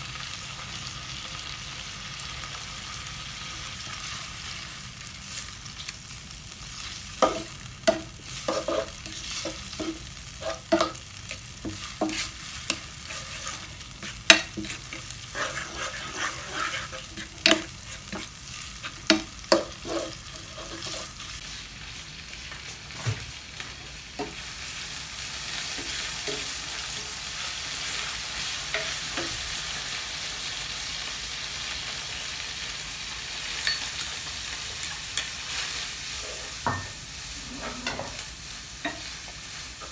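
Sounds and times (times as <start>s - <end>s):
food sizzling in a pan: 0.0s - 39.9s
utensil knocking and scraping pan: 7.2s - 11.0s, 11.6s - 21.1s.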